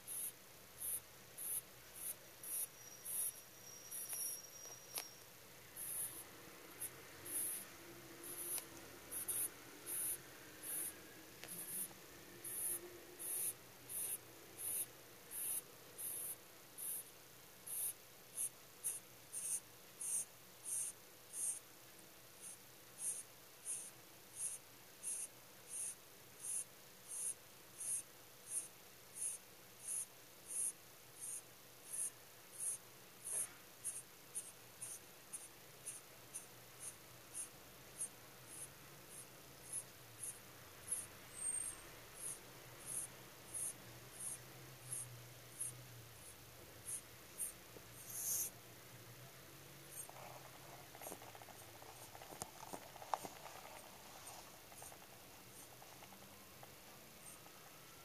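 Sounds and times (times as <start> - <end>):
rabbit snoring: 5.8 - 17.0, 30.6 - 36.0, 49.7 - 58.0.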